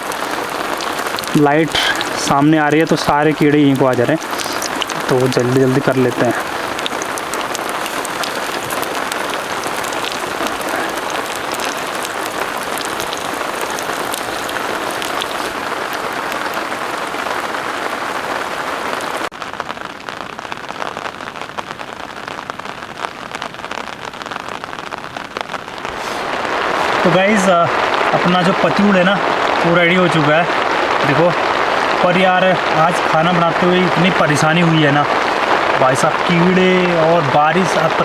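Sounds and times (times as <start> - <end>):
food frying in hot oil: 0.0 - 19.3
rain falling: 0.0 - 38.0.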